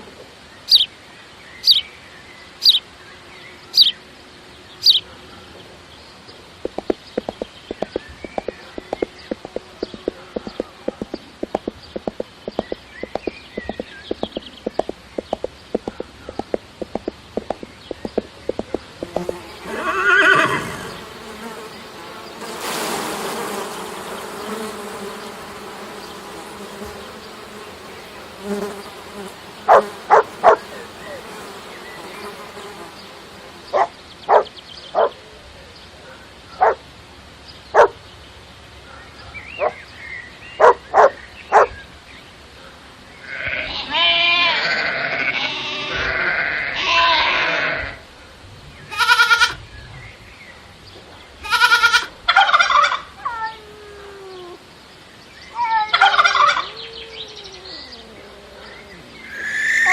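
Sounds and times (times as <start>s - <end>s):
horse hooves clip-clopping: 6.6s - 19.8s
goat bleating: 43.2s - 48.0s, 48.9s - 49.6s, 51.4s - 52.1s.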